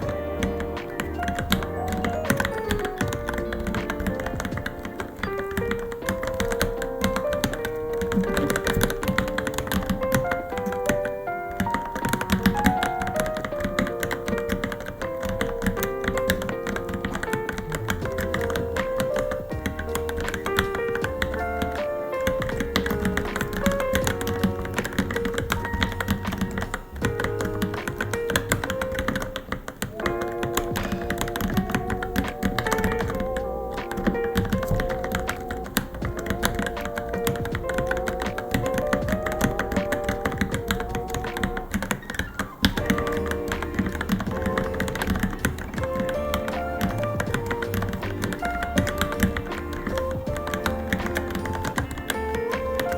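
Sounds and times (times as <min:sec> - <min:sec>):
background music melody: 0:00.0 - 0:52.9
fast keyboard typing: 0:00.0 - 0:52.9.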